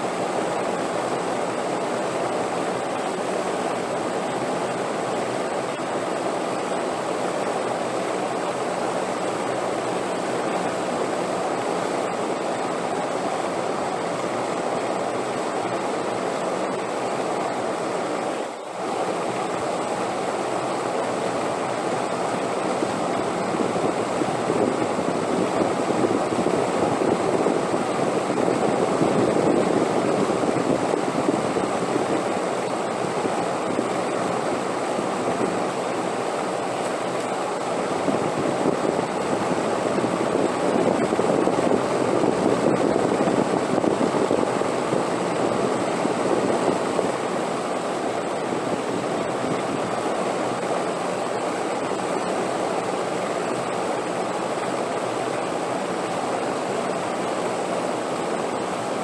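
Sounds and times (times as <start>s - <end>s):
rushing wind: 22.5s - 36.7s, 37.3s - 53.8s.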